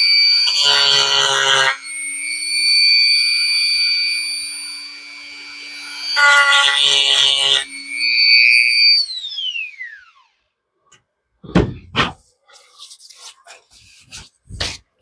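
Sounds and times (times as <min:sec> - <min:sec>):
power tool sanding whine: 0:00.0 - 0:10.5
knocks: 0:11.4 - 0:12.2.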